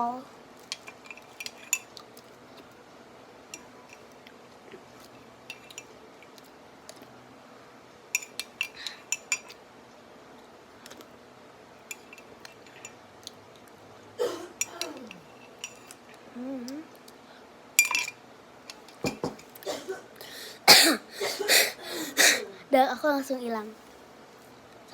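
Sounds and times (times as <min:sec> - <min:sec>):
spoon clinking against glass: 0:17.8 - 0:18.2.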